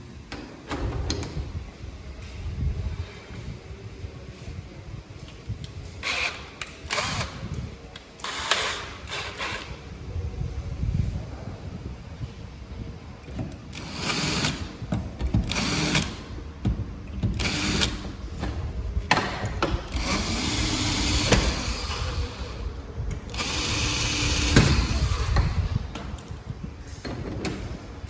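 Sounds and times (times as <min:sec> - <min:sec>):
power drill bursts: 0:15.5 - 0:16.2, 0:17.4 - 0:18.0, 0:23.3 - 0:25.5.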